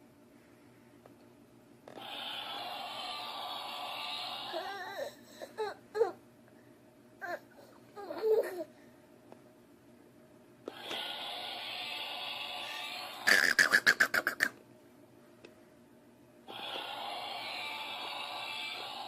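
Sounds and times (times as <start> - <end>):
small child crying: 4.3 - 6.2, 7.2 - 8.7.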